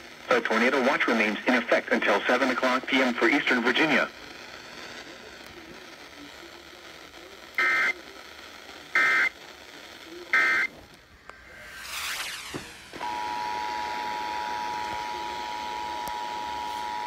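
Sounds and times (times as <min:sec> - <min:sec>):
radio static hiss: 0:00.0 - 0:17.0
buzzy digital data bursts: 0:10.3 - 0:17.0.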